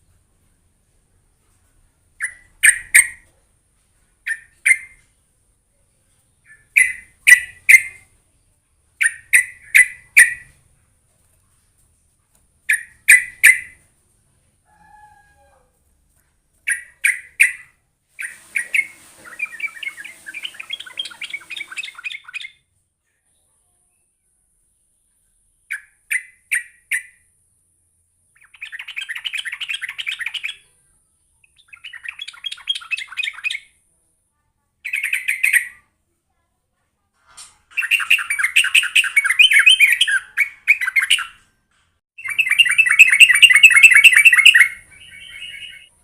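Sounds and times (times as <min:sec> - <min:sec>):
bulbul calling: 0:06.5 - 0:08.0, 0:42.2 - 0:45.9.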